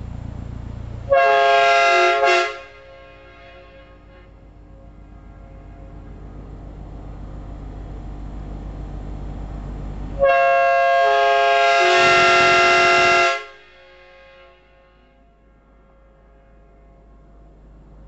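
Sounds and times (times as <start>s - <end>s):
train air horn chord: 1.1s - 6.8s, 10.2s - 17.6s.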